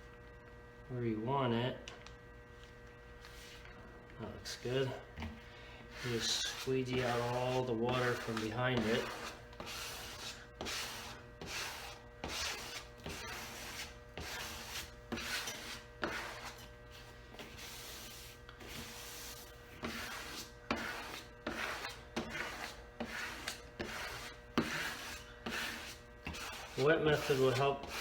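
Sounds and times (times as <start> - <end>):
squeegee rubbing on wet paper: 5.9 - 28.0.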